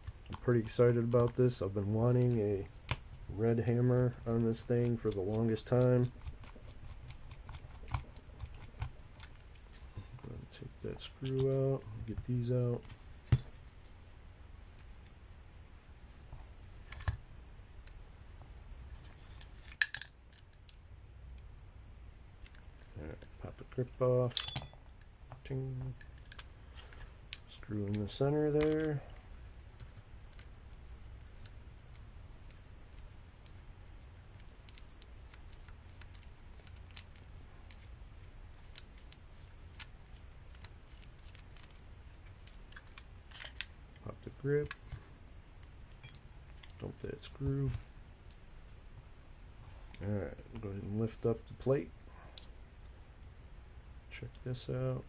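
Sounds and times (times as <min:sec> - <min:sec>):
low steady hum: 0:00.0 - 0:55.0
small metal parts clicking: 0:19.3 - 0:20.8, 0:24.3 - 0:25.0, 0:25.9 - 0:29.1, 0:38.6 - 0:43.8, 0:45.6 - 0:46.8
small clicks of screwdriver and metal parts: 0:25.3 - 0:29.0, 0:42.4 - 0:44.9.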